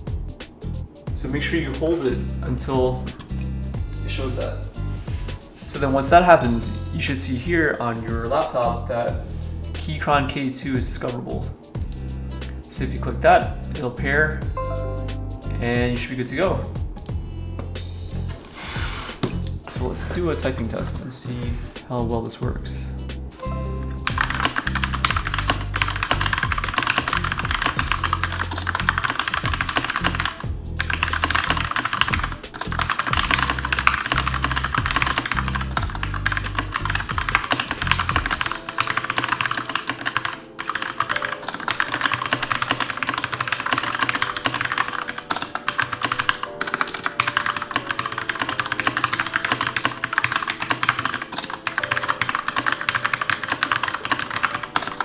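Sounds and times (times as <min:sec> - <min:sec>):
mechanical keyboard typing: 0:23.9 - 0:55.0.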